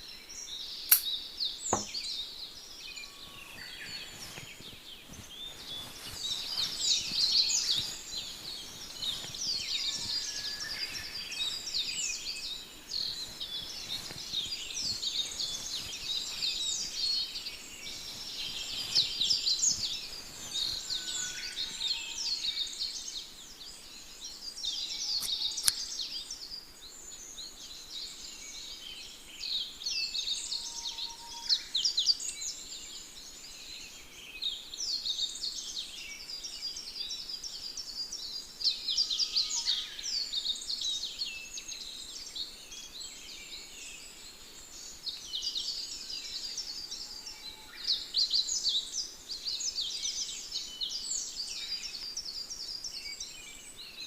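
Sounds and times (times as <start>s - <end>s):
small birds chirping: 0.0s - 54.0s
sharp click: 0.9s - 1.2s, 25.2s - 25.8s.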